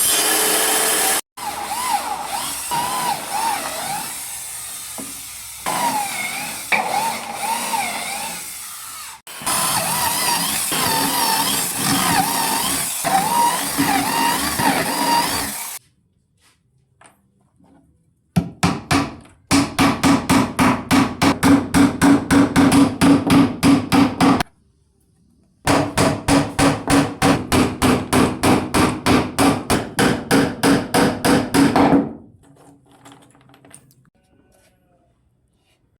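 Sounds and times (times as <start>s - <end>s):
power tool whirring: 0.0s - 15.8s
rapid hammering strikes: 18.6s - 24.4s, 25.7s - 32.1s.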